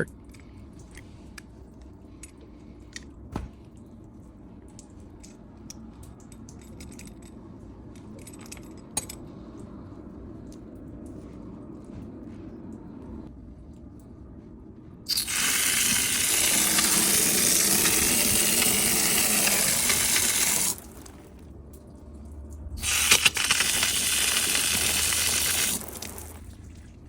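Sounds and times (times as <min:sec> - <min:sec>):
water hose spraying hiss: 0:15.1 - 0:21.4, 0:22.8 - 0:26.4.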